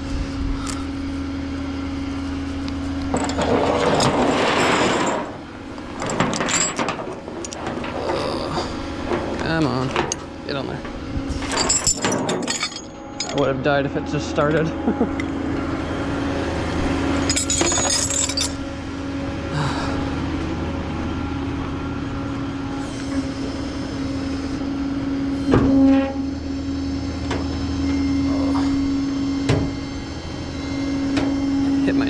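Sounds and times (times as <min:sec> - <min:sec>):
machine humming: 0:00.0 - 0:32.0
metallic clanks and rattles: 0:03.1 - 0:10.3, 0:11.3 - 0:13.6, 0:17.2 - 0:18.6.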